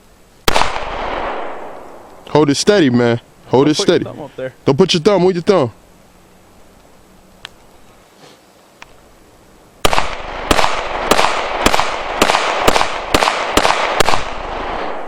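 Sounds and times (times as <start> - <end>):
pistol shots with echo: 0.5 - 2.1, 9.8 - 15.0.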